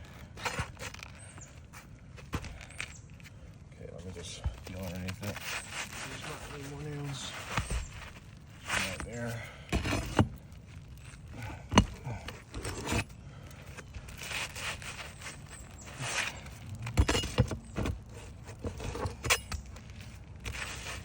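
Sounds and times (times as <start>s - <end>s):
scraping of shingles: 0.1s - 21.0s
hand tools clinking: 14.2s - 21.0s.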